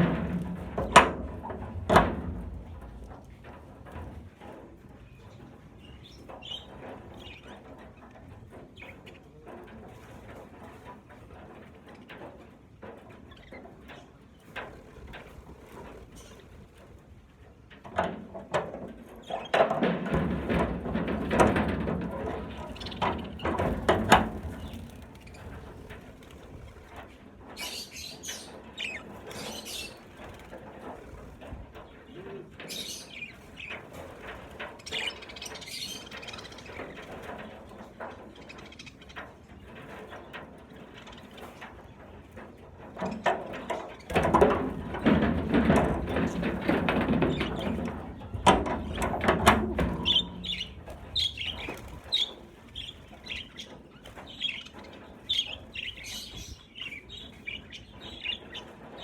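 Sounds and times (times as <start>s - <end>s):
rustling and knocking: 0.0s - 8.9s, 9.5s - 59.0s
budgerigars chirping: 50.0s - 58.7s.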